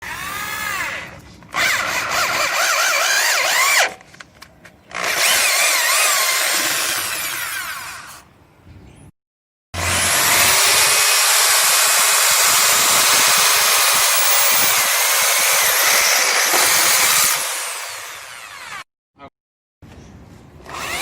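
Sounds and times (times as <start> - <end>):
power drill whine: 4.9 - 8.2, 9.8 - 18.9, 20.6 - 21.0.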